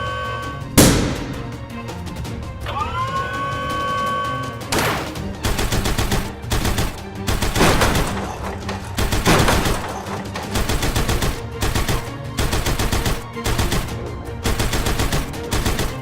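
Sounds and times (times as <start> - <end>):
background music: 0.0 - 16.0
rapid dense clattering: 4.7 - 16.0.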